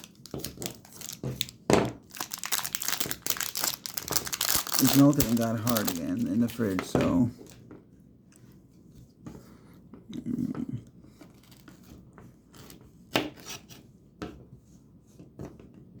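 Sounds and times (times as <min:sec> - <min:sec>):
knife cutting chocolate: 0:00.0 - 0:01.5, 0:12.6 - 0:13.8.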